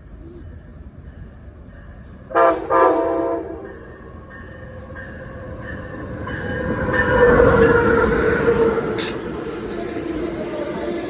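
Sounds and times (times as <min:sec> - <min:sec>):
train rumble: 0:00.0 - 0:11.0
train horn blasts: 0:02.3 - 0:03.8.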